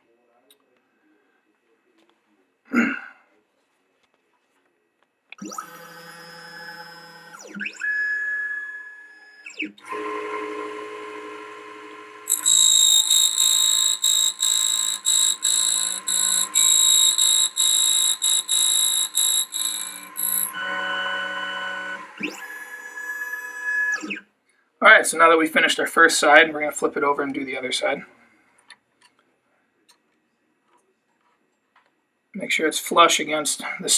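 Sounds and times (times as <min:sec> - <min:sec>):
motor whines: 0:05.4 - 0:24.2
high-pitched spinning key cutter: 0:12.2 - 0:24.2.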